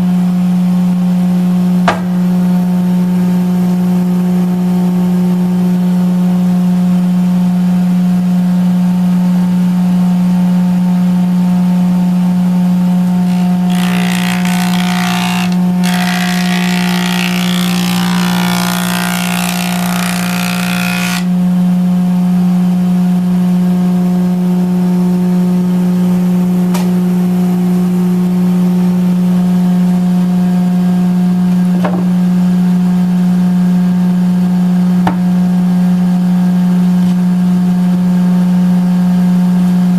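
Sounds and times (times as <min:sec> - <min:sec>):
board being planed: 0:01.9 - 0:02.6, 0:13.3 - 0:21.4
jointer motor humming: 0:13.3 - 0:21.3.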